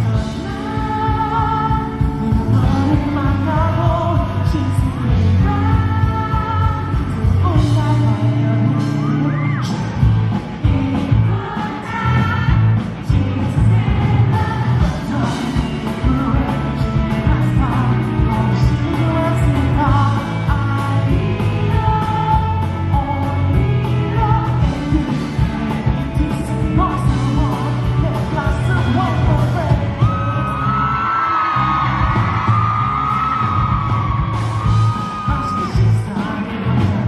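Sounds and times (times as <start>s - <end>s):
man singing: 0.0s - 32.1s, 34.8s - 37.0s
pop-rock band playing: 0.0s - 37.0s
steady drum beat: 9.9s - 30.6s, 31.9s - 37.0s.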